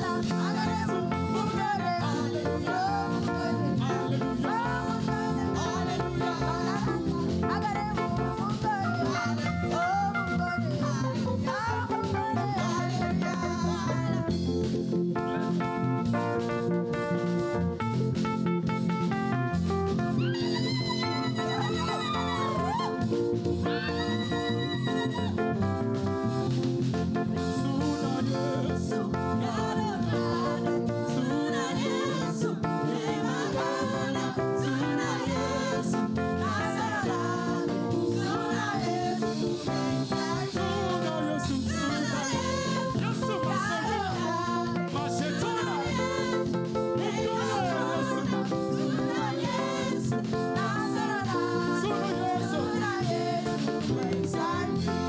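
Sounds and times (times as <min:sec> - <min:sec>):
person singing: 0:00.0 - 0:14.2, 0:20.2 - 0:25.6, 0:27.5 - 0:46.1
band with guitar playing: 0:00.0 - 0:55.0.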